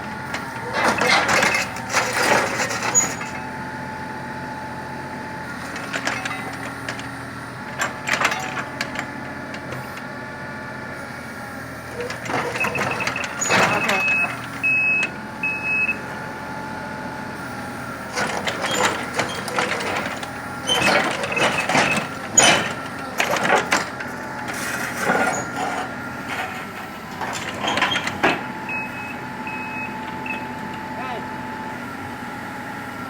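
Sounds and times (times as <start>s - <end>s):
voices: 12.0s - 14.6s, 18.7s - 24.5s, 30.7s - 31.5s
warning beeper short beeps: 12.7s - 16.0s.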